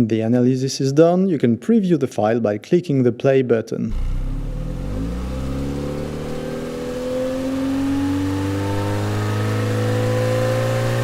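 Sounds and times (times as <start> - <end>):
car engine accelerating: 3.9 - 11.0.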